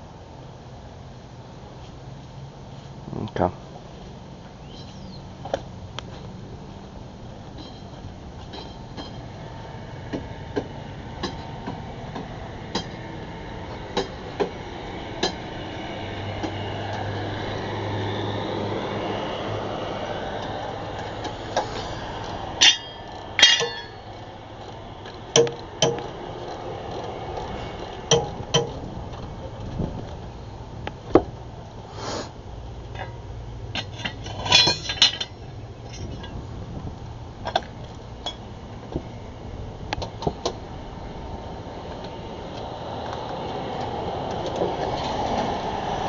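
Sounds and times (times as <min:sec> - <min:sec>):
steady background noise: 0:00.0 - 0:46.0
ringing metal clanks: 0:07.5 - 0:09.3, 0:22.6 - 0:24.2, 0:32.9 - 0:36.4, 0:38.2 - 0:38.5
metal blades knocking and clinking: 0:22.6 - 0:24.1, 0:33.7 - 0:36.4.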